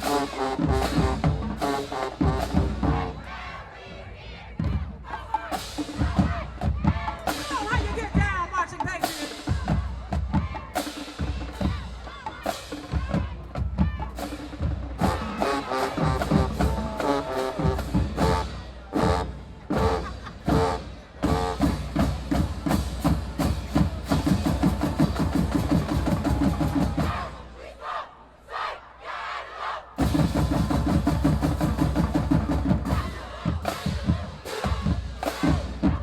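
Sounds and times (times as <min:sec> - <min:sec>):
bass and snare drums: 0:00.0 - 0:03.7, 0:04.3 - 0:27.7, 0:30.0 - 0:36.0
marching band passages: 0:00.0 - 0:36.0.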